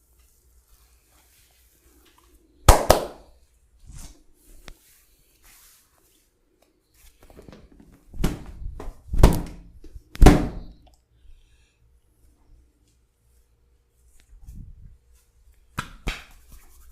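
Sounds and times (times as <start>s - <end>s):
massage hand slaps on body: 2.7s - 3.3s, 8.2s - 10.7s, 15.7s - 16.6s.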